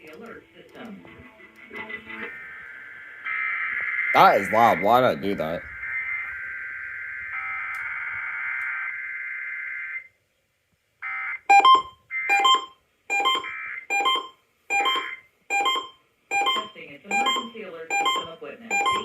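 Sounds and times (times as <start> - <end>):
electronic data screech: 2.3 - 9.0
short electronic beeps: 11.5 - 19.0.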